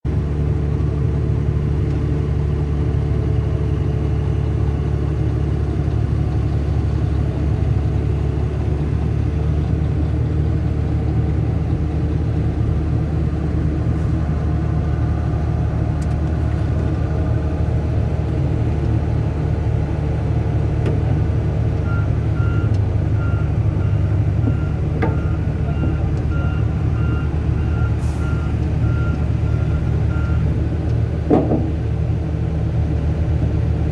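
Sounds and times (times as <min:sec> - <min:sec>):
excavator diesel engine running: 0:00.1 - 0:33.9
warning alarm beeping: 0:21.9 - 0:30.4.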